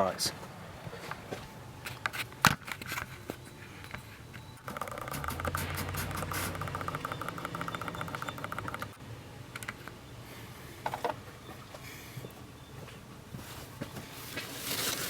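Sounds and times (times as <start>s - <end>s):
low hum: 4.6s - 10.2s
ratchet wrench clicking: 4.7s - 9.0s.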